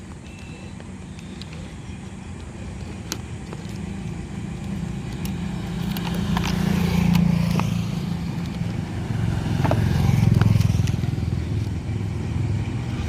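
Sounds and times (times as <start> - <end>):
engine running steadily: 0.0 - 13.0.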